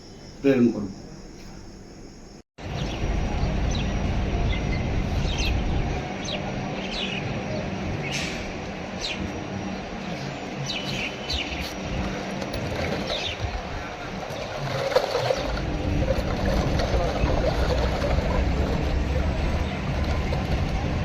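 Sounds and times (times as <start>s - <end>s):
birds chirping: 0.0s - 21.0s.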